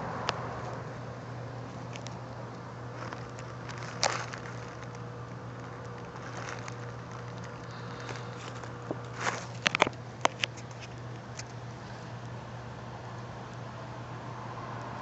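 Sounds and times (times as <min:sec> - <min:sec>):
low hum: 0:00.0 - 0:15.0
breath puffs through rubber hose: 0:07.6 - 0:09.6.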